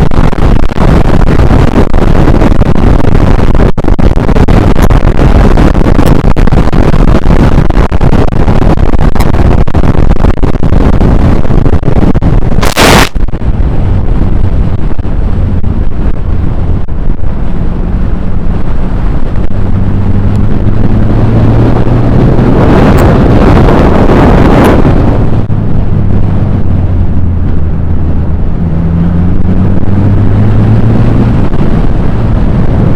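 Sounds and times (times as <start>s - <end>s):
wind rushing past moving car: 0.0s - 32.9s
low engine note: 13.2s - 32.9s.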